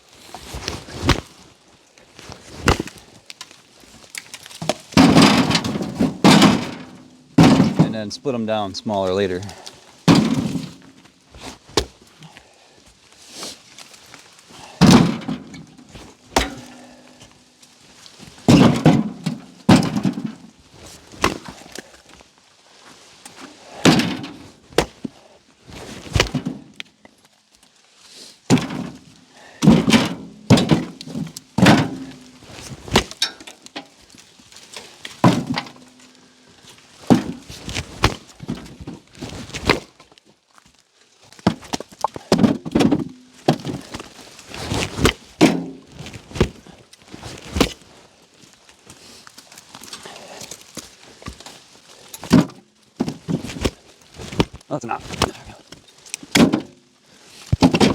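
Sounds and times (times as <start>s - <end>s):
axe chopping firewood: 2.6s - 3.0s, 4.0s - 8.0s, 9.5s - 11.0s, 11.7s - 12.1s, 14.6s - 17.4s, 18.5s - 20.5s, 21.1s - 21.9s, 23.7s - 25.2s, 26.0s - 26.9s, 28.5s - 34.2s, 35.1s - 36.0s, 37.0s - 39.9s, 41.4s - 44.2s, 44.8s - 46.6s, 52.1s - 56.8s, 57.5s - 57.9s.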